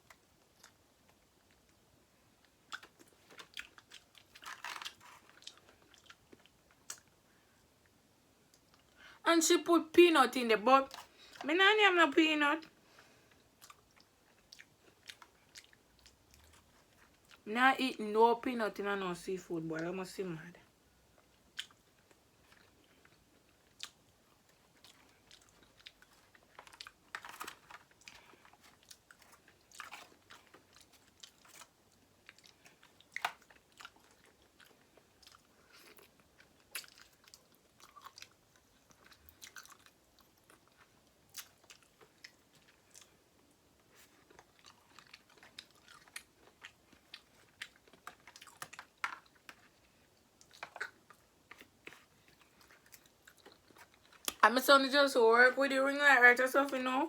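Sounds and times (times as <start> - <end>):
person chewing seafood: 2.4 - 9.0, 12.8 - 17.4, 21.2 - 54.4.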